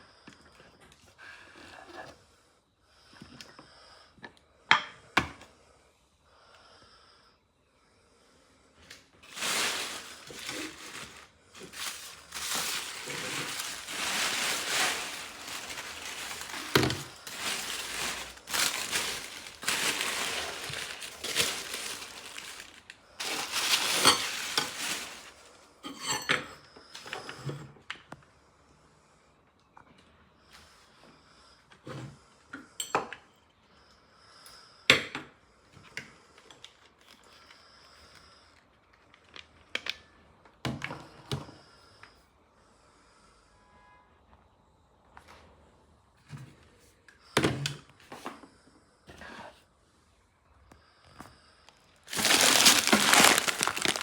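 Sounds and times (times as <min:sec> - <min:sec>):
utensils clinking against pan: 0:23.2 - 0:26.5.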